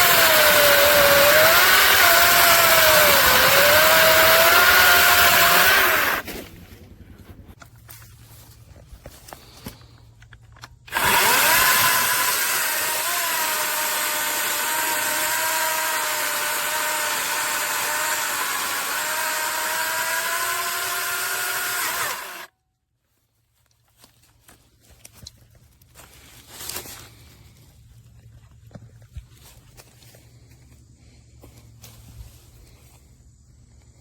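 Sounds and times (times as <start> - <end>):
electric chainsaw whining: 0.0 - 6.2, 10.9 - 22.5.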